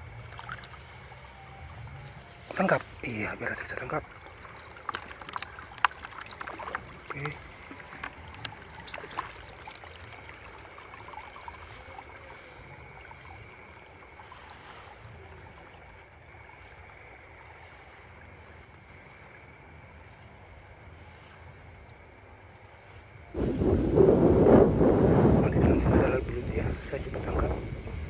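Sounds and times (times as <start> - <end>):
water trickling and sloshing: 0.0 - 28.0
wind rumble on microphone: 23.1 - 28.0.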